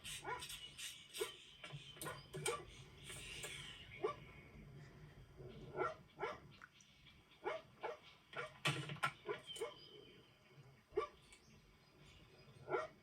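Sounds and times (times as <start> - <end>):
dog barking: 5.7 - 6.5, 7.4 - 8.6, 11.0 - 11.2, 12.7 - 13.0.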